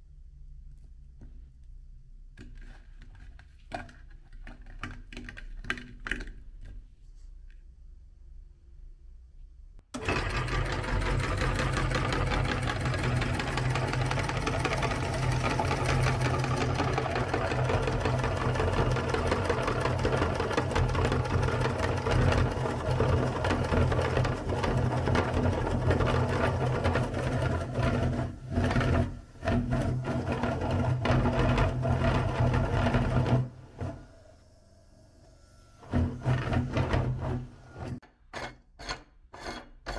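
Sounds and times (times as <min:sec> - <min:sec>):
electric meat grinder running: 0:10.0 - 0:33.4.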